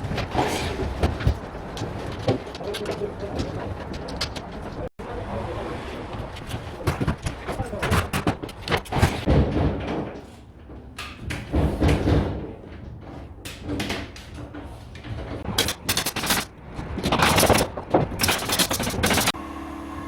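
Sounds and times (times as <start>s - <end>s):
sharp knocks and bangs: 6.2s - 14.5s, 15.1s - 19.4s.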